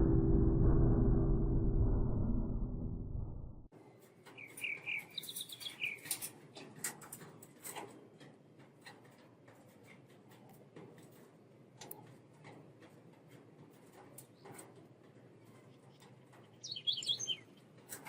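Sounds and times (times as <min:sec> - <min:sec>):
small birds chirping: 0:04.2 - 0:06.3, 0:14.1 - 0:18.0.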